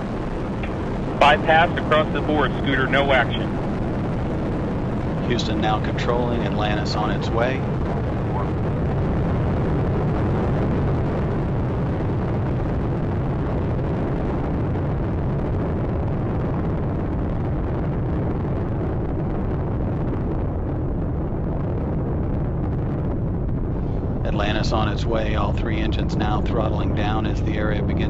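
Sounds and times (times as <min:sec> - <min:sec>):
rocket engines roaring: 0:00.0 - 0:28.0.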